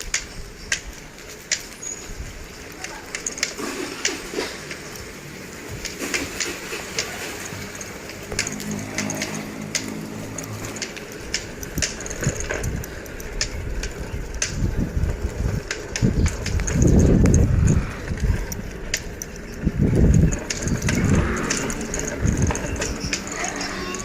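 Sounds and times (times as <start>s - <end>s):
bicycle ticking and rattling: 0.0s - 24.0s
deep rumbling wind gusts: 11.4s - 24.0s.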